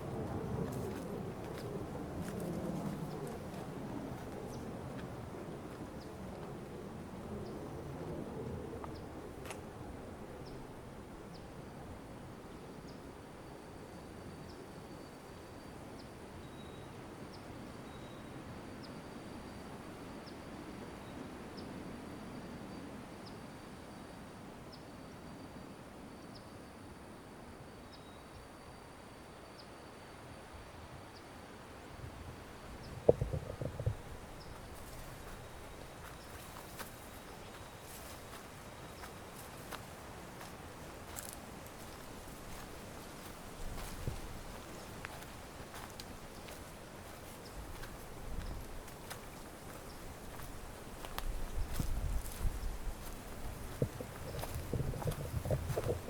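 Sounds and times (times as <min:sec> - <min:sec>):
hiss of air and leaves: 0:34.2 - 0:56.0.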